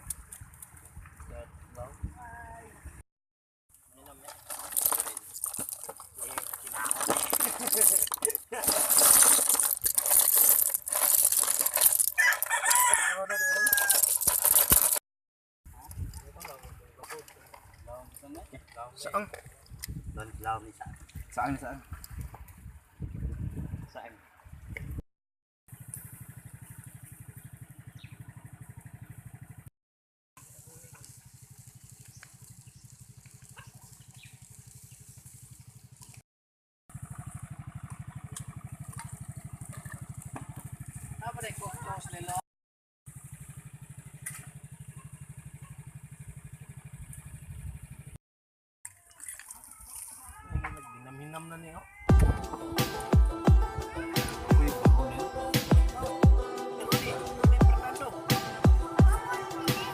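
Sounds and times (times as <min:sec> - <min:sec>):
small engine idling: 0:03.7 - 0:12.8, 0:25.7 - 0:29.7, 0:30.4 - 0:36.2, 0:36.9 - 0:42.4, 0:43.1 - 0:48.2
rooster crowing: 0:12.1 - 0:14.2.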